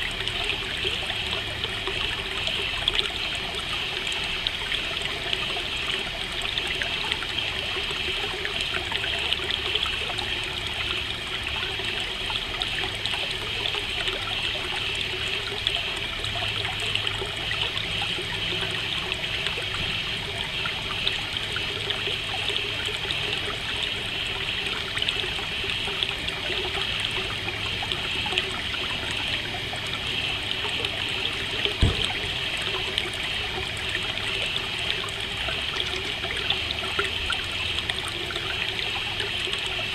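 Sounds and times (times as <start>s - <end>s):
trickling running water: 0.0s - 39.9s.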